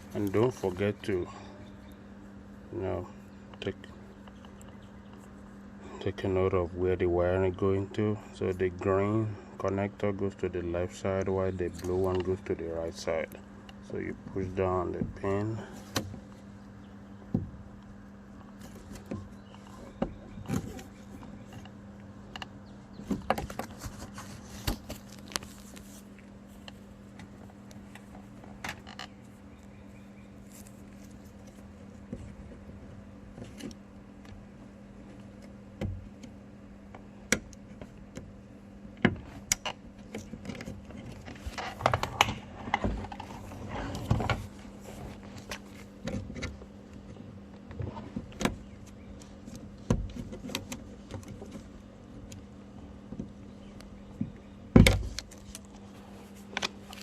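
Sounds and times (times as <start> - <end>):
steady low hum: 0.0 - 57.0.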